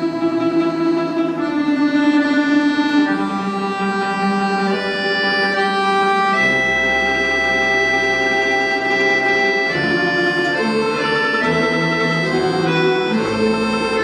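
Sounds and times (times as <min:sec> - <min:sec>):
folk orchestra playing held chords: 0:00.0 - 0:14.0.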